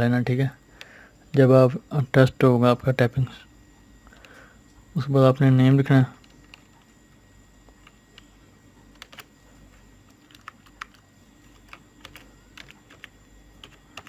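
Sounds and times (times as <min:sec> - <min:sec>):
faint computer keystrokes: 0:06.2 - 0:07.0, 0:07.6 - 0:09.3, 0:10.0 - 0:14.0.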